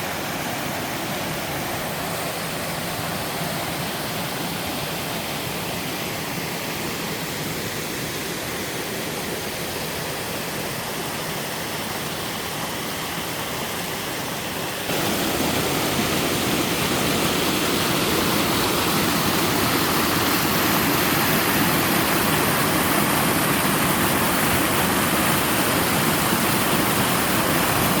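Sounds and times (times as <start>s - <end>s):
waterfall rushing over rock: 0.0s - 28.0s.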